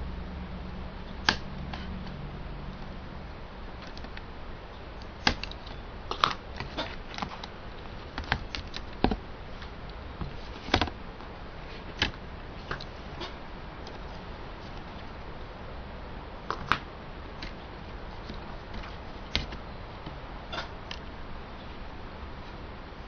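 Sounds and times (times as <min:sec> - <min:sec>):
laptop parts clicking and tapping: 0:05.0 - 0:07.5, 0:08.1 - 0:11.0.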